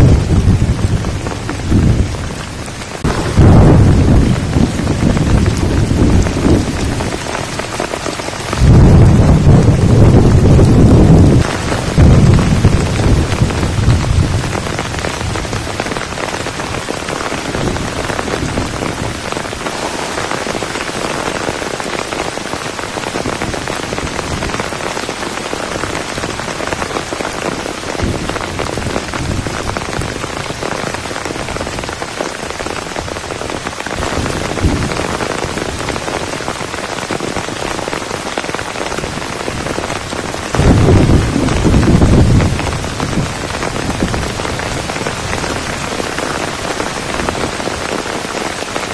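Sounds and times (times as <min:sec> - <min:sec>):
heavy rain falling: 0:00.0 - 0:48.9
loud low rumble: 0:03.0 - 0:06.8, 0:08.6 - 0:14.4.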